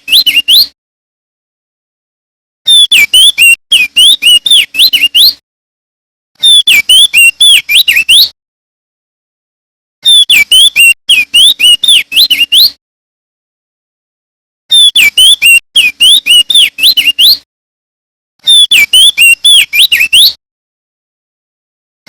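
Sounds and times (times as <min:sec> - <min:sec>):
bird singing whistled notes: 0:00.0 - 0:00.8, 0:02.7 - 0:05.4, 0:06.4 - 0:08.4, 0:10.0 - 0:12.8, 0:14.7 - 0:17.4, 0:18.4 - 0:20.4.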